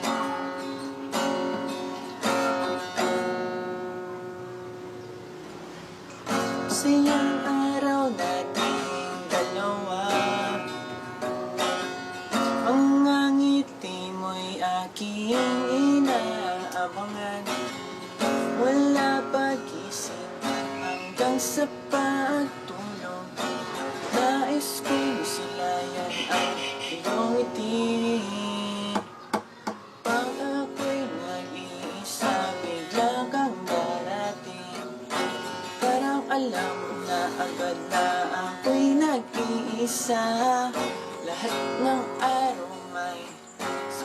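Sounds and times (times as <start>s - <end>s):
acoustic guitar playing: 0.0s - 44.0s.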